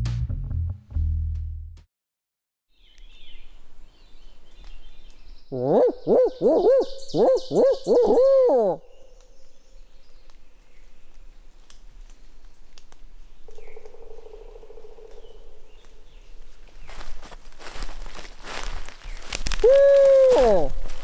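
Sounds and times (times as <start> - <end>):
owl hooting: 5.5 - 9.2, 13.4 - 16.0, 18.5 - 21.0.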